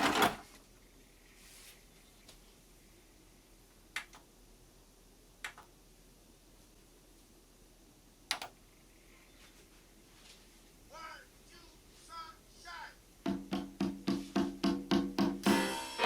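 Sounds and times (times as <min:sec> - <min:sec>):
faint low hum: 0:00.4 - 0:13.8
sharp clicks: 0:03.9 - 0:04.3, 0:05.4 - 0:05.7, 0:08.3 - 0:08.6.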